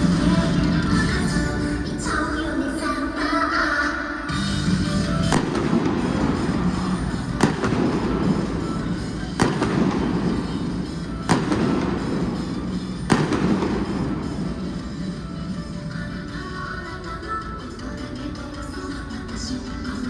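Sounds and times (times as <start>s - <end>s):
music over sound system: 0.0s - 20.0s
fireworks bangs echoing: 5.0s - 16.3s.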